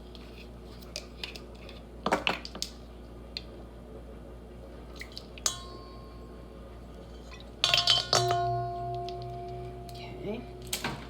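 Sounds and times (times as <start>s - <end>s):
dishware clinking: 5.4s - 6.4s, 7.1s - 11.0s
sharp ringing clink: 5.4s - 6.6s, 7.6s - 11.0s.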